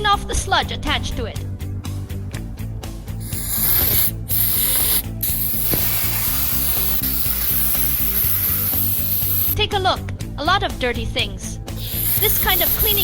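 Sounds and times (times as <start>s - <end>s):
spray cleaner hissing: 3.2s - 9.6s, 11.8s - 13.0s.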